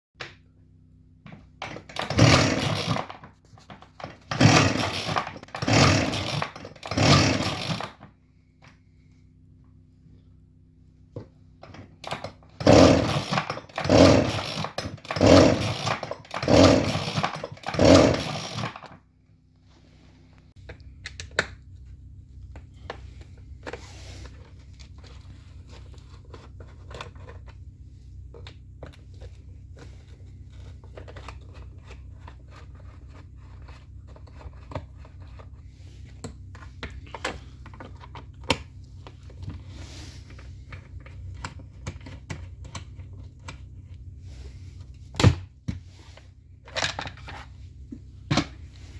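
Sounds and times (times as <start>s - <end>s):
chainsaw engine revving: 1.6s - 3.2s, 4.0s - 8.0s, 12.0s - 19.0s
low steady hum: 19.1s - 48.9s.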